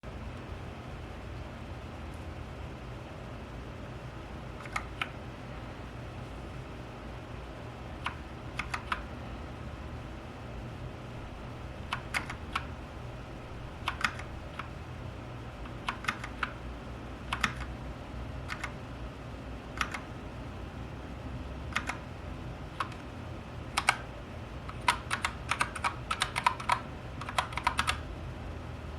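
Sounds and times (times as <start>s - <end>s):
low steady hum: 0.0s - 28.9s
mechanical keyboard clicks: 4.6s - 5.2s, 8.0s - 9.1s, 11.9s - 12.8s, 13.8s - 14.7s, 15.6s - 16.6s, 17.3s - 17.7s, 18.4s - 18.8s, 19.7s - 20.1s, 21.7s - 22.1s, 22.7s - 23.1s, 23.7s - 24.1s, 24.7s - 28.0s.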